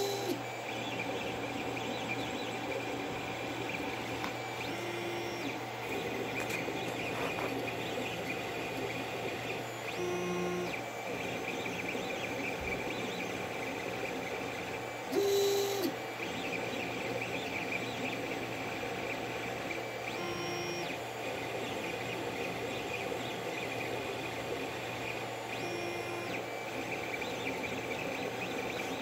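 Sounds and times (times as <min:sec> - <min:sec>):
printer mechanical whir: 0:00.0 - 0:29.0
stepper motor whines: 0:00.0 - 0:29.0.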